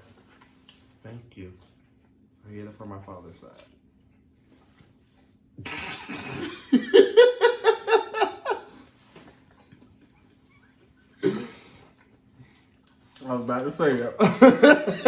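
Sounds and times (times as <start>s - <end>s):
person laughing: 6.1s - 8.8s, 14.2s - 15.0s.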